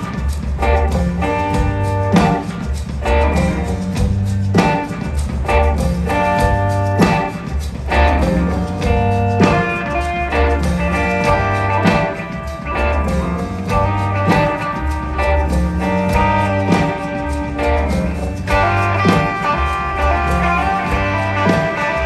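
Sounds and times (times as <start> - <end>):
blues-rock band playing: 0.0 - 22.0
heavy accented band hits: 6.4 - 22.0.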